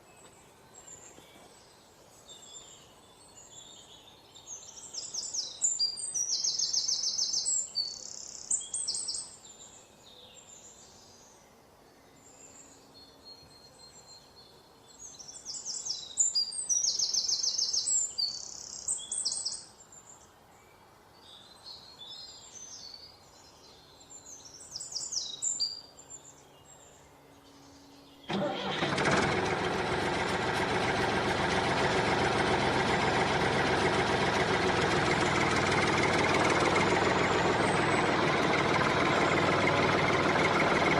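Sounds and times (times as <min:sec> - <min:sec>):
small birds chirping: 0:00.0 - 0:28.8, 0:29.7 - 0:40.9
mini tractor motor running: 0:28.3 - 0:40.9.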